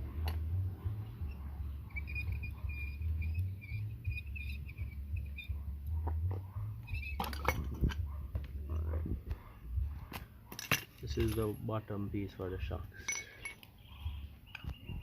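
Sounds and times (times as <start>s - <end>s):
metal clicks and clanks: 10.1s - 11.5s.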